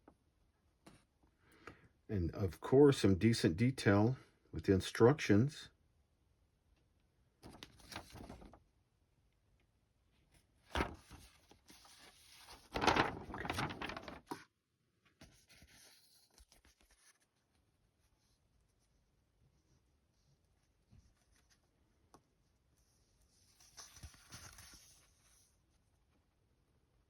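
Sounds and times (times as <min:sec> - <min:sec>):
paper pages turning: 0:07.4 - 0:08.6, 0:10.6 - 0:14.5, 0:15.2 - 0:17.4, 0:23.2 - 0:25.5.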